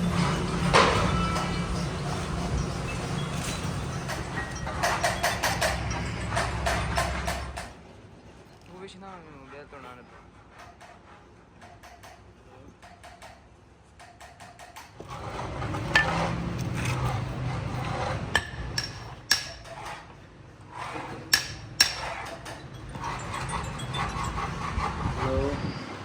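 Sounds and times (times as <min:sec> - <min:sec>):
sharp metal knocks: 0:15.6 - 0:17.0, 0:18.2 - 0:20.0, 0:21.2 - 0:24.4.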